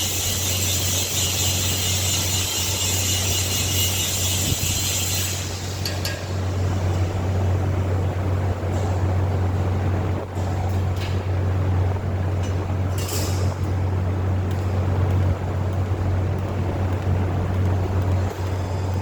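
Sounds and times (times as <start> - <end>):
welding arc hiss: 0.0 - 7.3
welding machine hum: 0.0 - 19.0.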